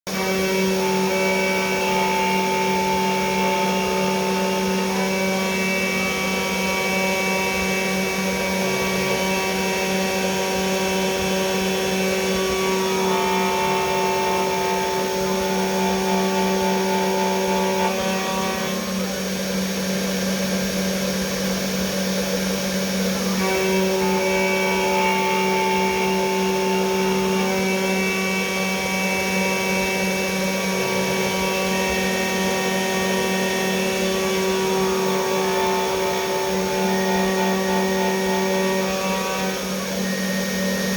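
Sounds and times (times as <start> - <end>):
spindle motor whine: 0.1 - 40.9
high machine tones: 22.6 - 40.9.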